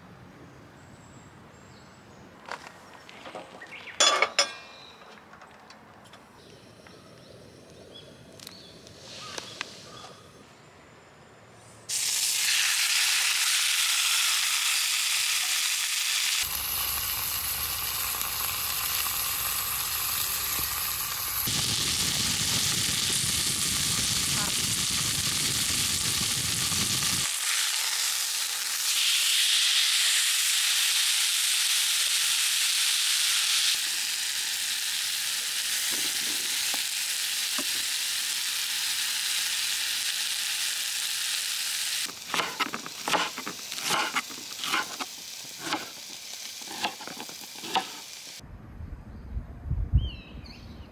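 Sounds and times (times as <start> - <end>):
food sizzling: 11.9 - 48.4.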